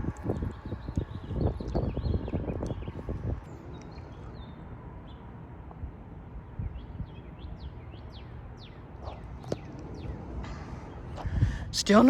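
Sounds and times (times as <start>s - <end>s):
low wind rumble: 0.0s - 12.0s
wind gust: 9.1s - 12.0s.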